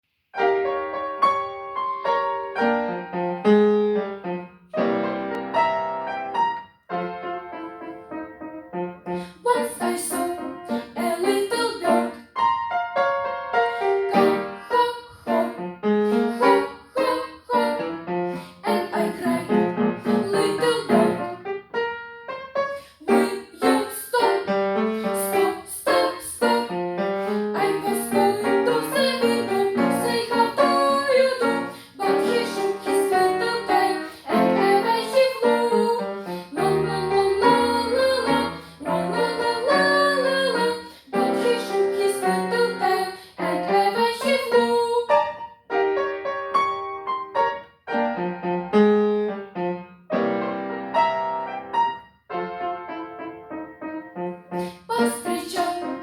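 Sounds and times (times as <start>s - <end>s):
piano playing: 0.3s - 56.0s
person singing: 9.2s - 12.3s, 13.6s - 21.4s, 22.9s - 45.3s, 54.6s - 56.0s.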